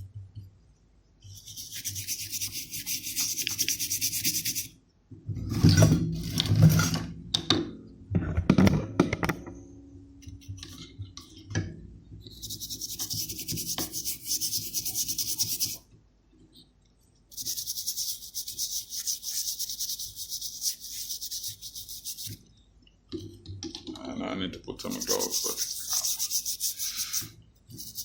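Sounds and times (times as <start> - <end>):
brush scrubbing: 1.3 - 4.7, 12.3 - 15.8, 17.3 - 22.4, 24.8 - 28.0.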